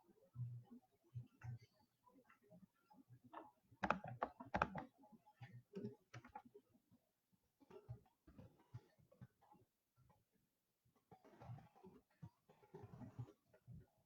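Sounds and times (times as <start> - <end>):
light clicks and taps: 3.3 - 6.7.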